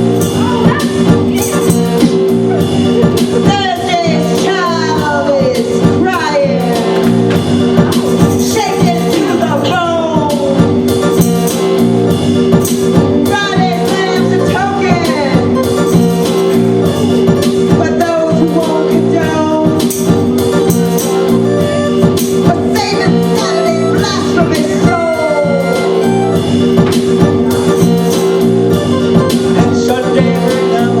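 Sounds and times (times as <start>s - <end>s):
live band music: 0.0s - 31.0s
sliding melody line: 0.0s - 31.0s.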